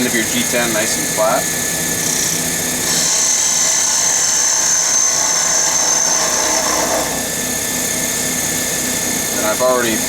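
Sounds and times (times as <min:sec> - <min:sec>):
lathe motor hum: 0:00.0 - 0:10.0.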